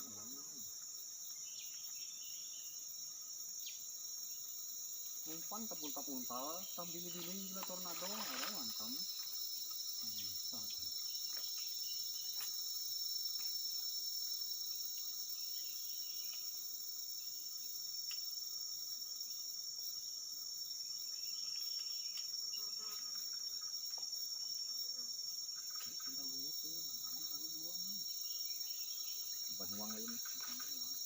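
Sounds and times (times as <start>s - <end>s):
insects droning: 0.0s - 31.0s.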